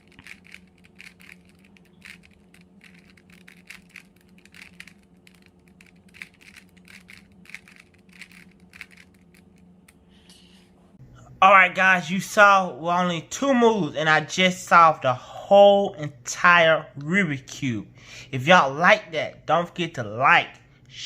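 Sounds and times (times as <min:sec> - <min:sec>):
puzzle cube plastic clicks: 0:00.0 - 0:10.0
faint steady hum: 0:00.0 - 0:21.0.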